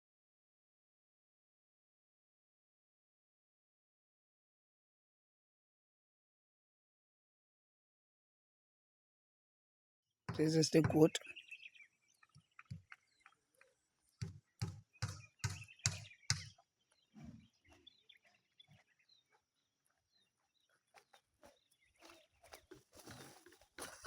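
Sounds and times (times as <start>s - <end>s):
faint bird chirps: 10.4s - 19.4s.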